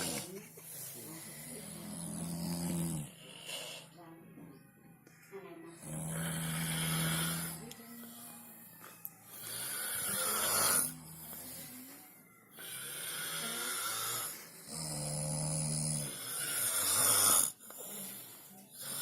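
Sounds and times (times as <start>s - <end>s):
person snoring: 0.0s - 3.9s, 5.8s - 7.7s, 9.3s - 11.9s, 12.5s - 18.2s, 18.8s - 19.0s.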